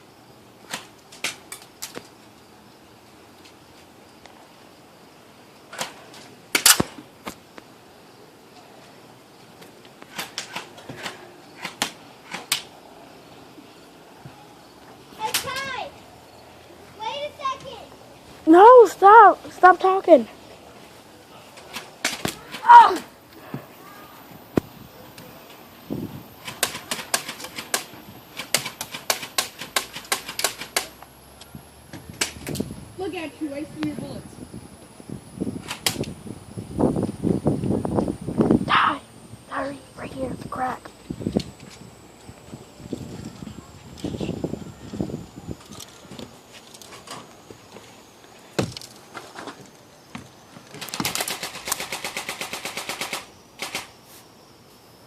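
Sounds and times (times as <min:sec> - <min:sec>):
bb gun firing: 0:06.5 - 0:07.0, 0:21.7 - 0:22.6, 0:26.4 - 0:31.0, 0:50.8 - 0:53.9.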